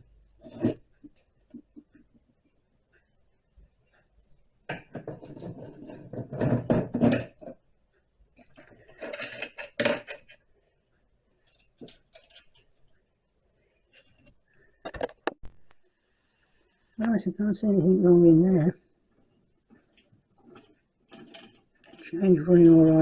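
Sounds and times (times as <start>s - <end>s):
metal parts clattering: 8.6s - 10.4s, 11.4s - 12.8s, 19.9s - 23.0s.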